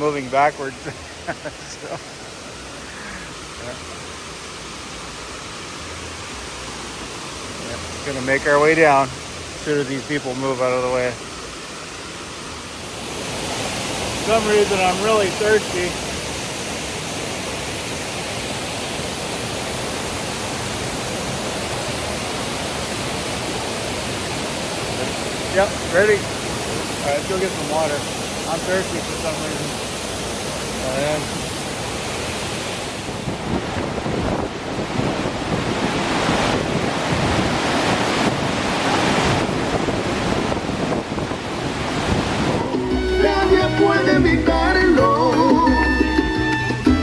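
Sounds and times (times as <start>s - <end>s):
fountain water cascading: 0.0s - 44.9s
wind buffeting microphone: 15.4s - 42.9s.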